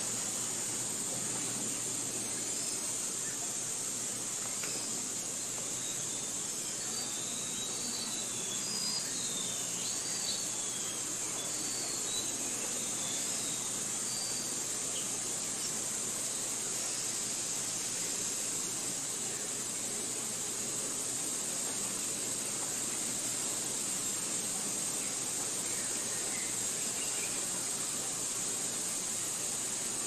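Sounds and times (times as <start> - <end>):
steady high-pitched hiss: 0.0 - 30.0.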